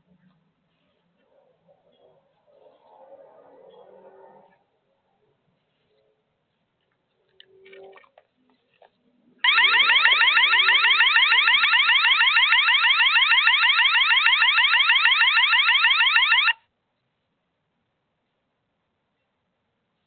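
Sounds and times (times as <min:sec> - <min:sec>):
electronic alarm siren warbling: 0:09.4 - 0:16.6.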